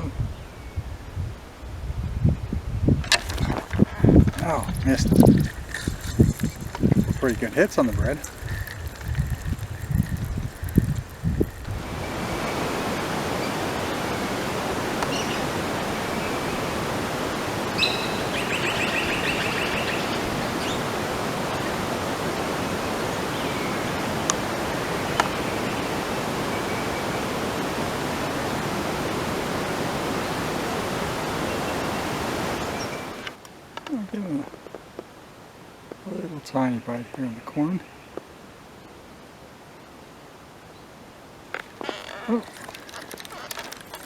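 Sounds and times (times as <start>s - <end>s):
steady rushing hiss: 0.9s - 44.0s
faint clicks: 3.0s - 11.8s, 41.5s - 44.0s.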